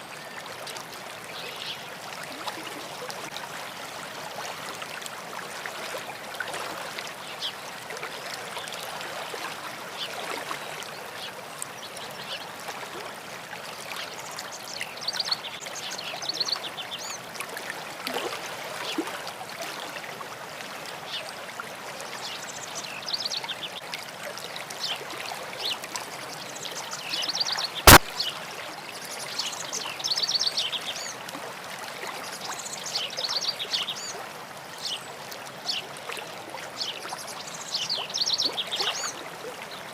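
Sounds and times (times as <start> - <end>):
stream water trickling: 0.0 - 39.9
sharp click: 27.9 - 28.1.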